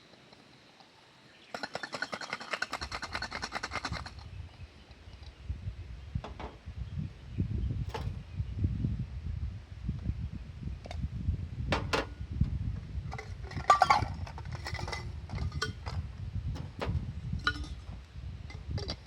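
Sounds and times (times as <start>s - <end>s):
low steady rumble: 4.1s - 19.0s
cookware clinking and knocking: 13.5s - 16.0s, 17.4s - 17.8s.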